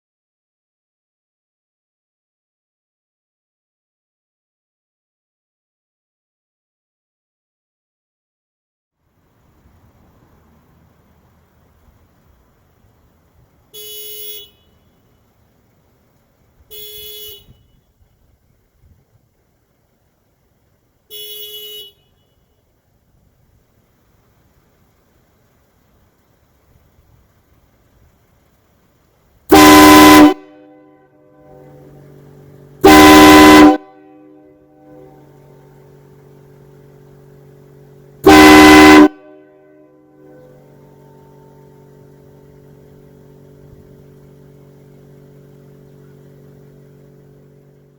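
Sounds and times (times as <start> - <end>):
car horn blasts: 13.7 - 15.2, 16.7 - 17.9, 21.1 - 22.6, 29.5 - 43.0
faint low hum: 22.0 - 47.9.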